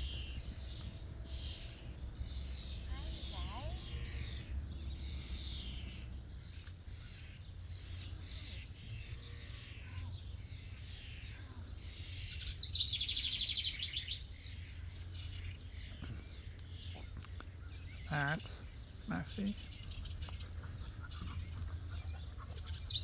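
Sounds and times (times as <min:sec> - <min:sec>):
low steady rumble: 0:00.0 - 0:23.0
songbirds chirping: 0:00.0 - 0:23.0.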